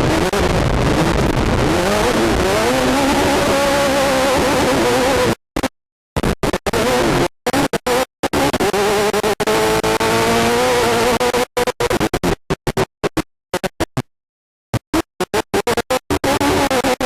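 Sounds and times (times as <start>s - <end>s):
buggy engine revving: 0.0s - 5.4s, 6.7s - 12.4s.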